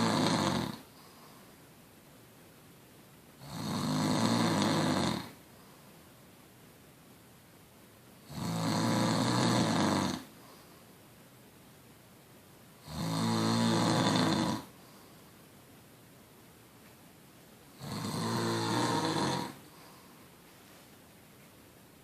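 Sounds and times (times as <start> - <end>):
rasping snores: 0.0 - 0.9, 3.4 - 5.4, 8.2 - 10.3, 12.8 - 14.7, 17.7 - 19.7
quiet breathing: 0.0 - 1.8, 4.7 - 6.3, 9.8 - 11.2, 12.8 - 15.5, 17.7 - 21.5.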